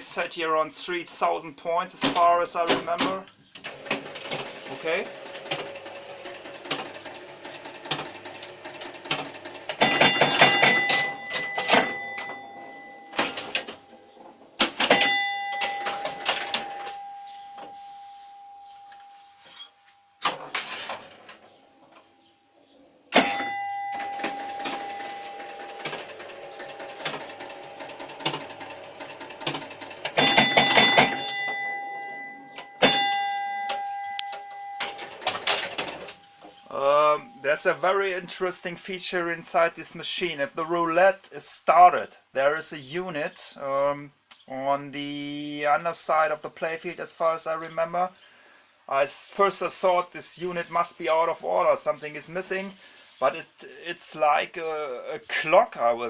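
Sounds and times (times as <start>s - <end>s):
pinball machine clicking and clacking: 2.0s - 17.0s, 20.2s - 21.6s, 23.1s - 36.2s
pinball bell ringing: 2.1s - 38.5s.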